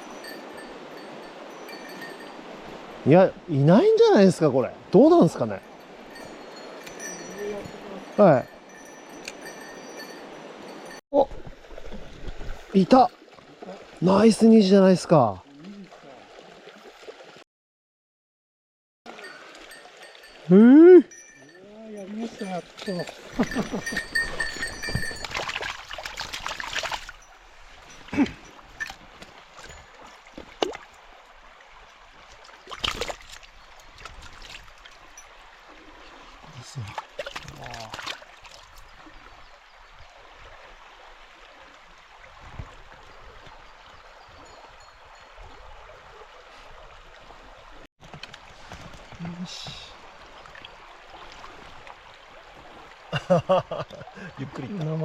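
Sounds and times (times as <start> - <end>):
mountain stream rushing: 0.0 - 11.0, 11.6 - 17.4, 19.1 - 55.0
water splashing: 4.0 - 14.8, 15.4 - 17.4, 19.1 - 53.2
water rushing over rocks: 19.1 - 39.3.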